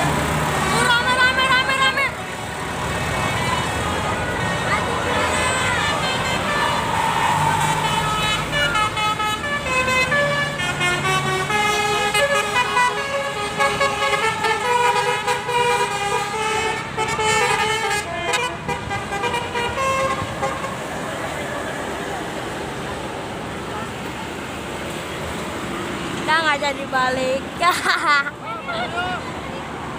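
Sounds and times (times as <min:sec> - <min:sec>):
bus engine running: 0:00.0 - 0:29.9
bus musical horn tune: 0:05.3 - 0:20.9.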